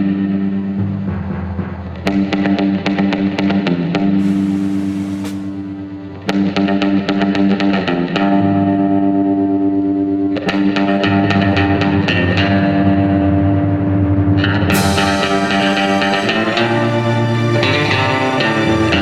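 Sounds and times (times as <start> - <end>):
bass: 9.6 - 19.0
distorted electric guitar: 14.5 - 19.0.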